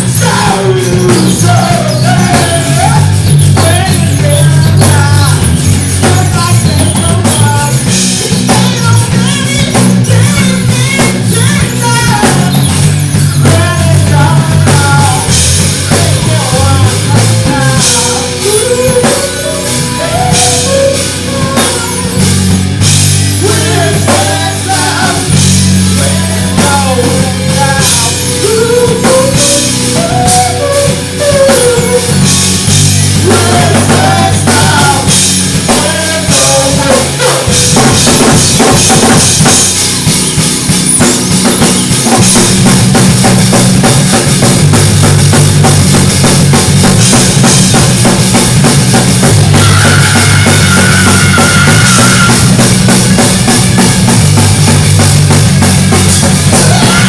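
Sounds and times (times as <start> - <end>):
person singing: 0.0 - 39.8, 49.4 - 53.3, 56.1 - 57.0
rock band playing: 0.0 - 57.0.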